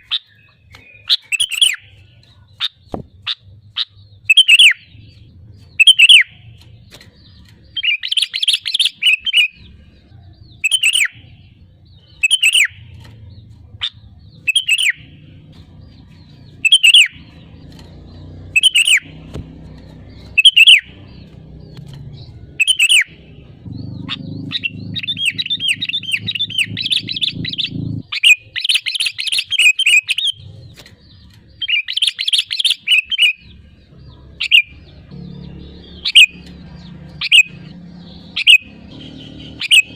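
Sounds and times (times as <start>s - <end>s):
bird chattering song: 0.0s - 39.9s
low hum: 11.2s - 28.0s.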